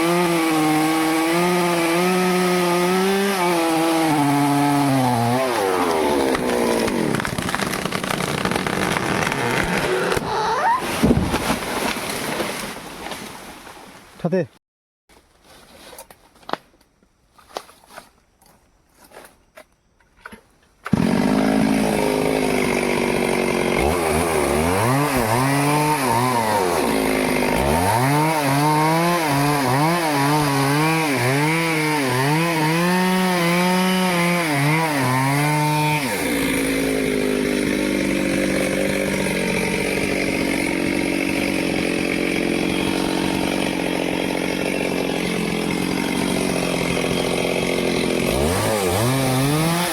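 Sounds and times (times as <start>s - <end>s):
chainsaw running: 0.0s - 10.8s, 20.9s - 49.9s.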